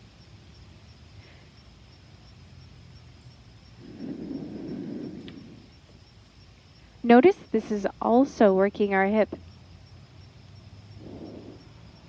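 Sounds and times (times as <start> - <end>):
wind gust on microphone: 3.8 - 5.8.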